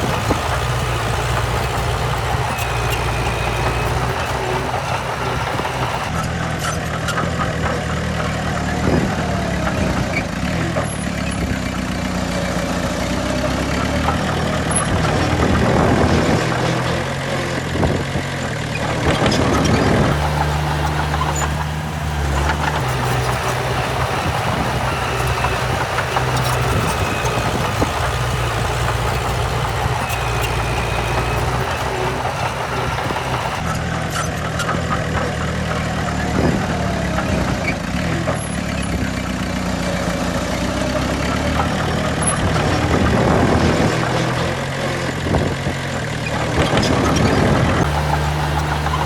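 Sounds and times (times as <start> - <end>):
diesel engine of heavy machinery: 0.0 - 14.7, 20.0 - 34.0, 47.8 - 49.0.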